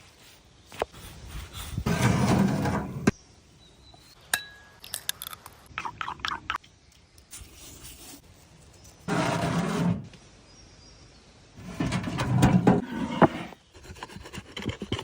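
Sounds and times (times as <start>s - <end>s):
cookware scraping: 1.9s - 3.1s, 9.1s - 10.1s, 11.6s - 13.6s.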